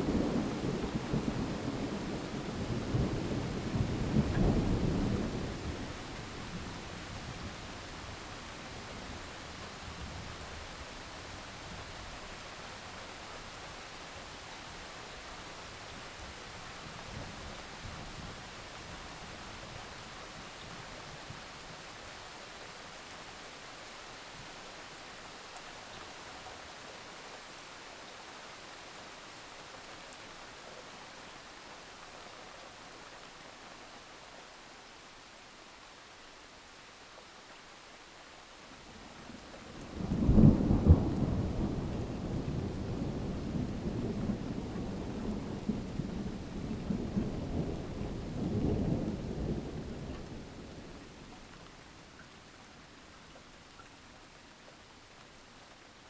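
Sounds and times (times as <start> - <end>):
steady rain: 0.0 - 56.0
thunder rumbling: 39.8 - 50.8.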